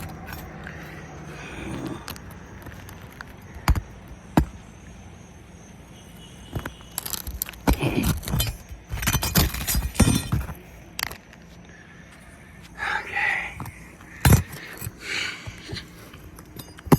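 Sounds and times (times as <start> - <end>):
scraping clinking and cracking: 0.0 - 4.6, 6.5 - 11.4, 13.6 - 16.9.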